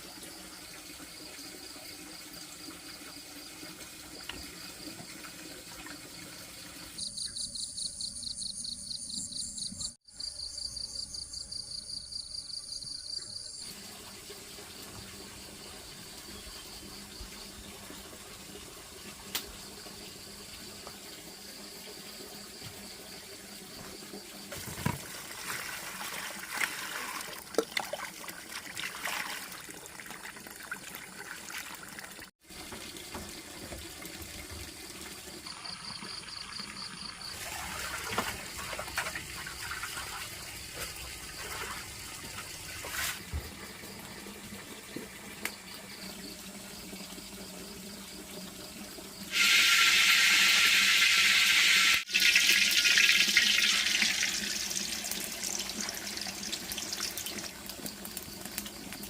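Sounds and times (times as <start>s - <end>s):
water splashing and trickling: 0.0s - 7.3s, 13.6s - 59.0s.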